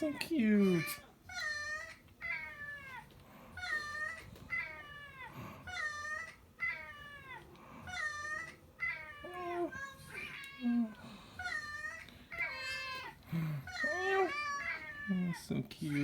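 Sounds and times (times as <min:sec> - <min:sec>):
cat meowing: 0:00.6 - 0:15.3.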